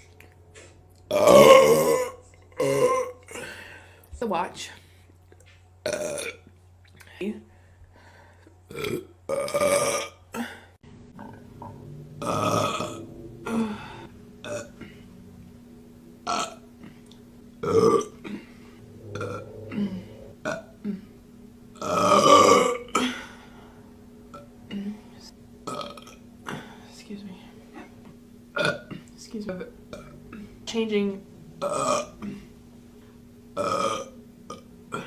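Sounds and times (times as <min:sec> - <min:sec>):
woman burping: 0:01.1 - 0:03.6, 0:05.9 - 0:06.5, 0:08.7 - 0:10.6, 0:11.2 - 0:15.0, 0:17.6 - 0:21.1, 0:21.8 - 0:23.3, 0:28.6 - 0:29.2, 0:31.6 - 0:32.5, 0:33.6 - 0:35.0.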